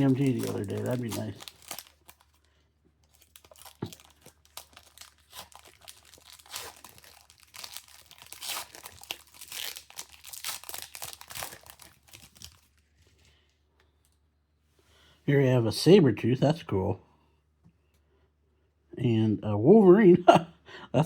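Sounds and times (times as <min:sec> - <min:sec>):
plastic wrapper crinkling: 0:00.0 - 0:13.2.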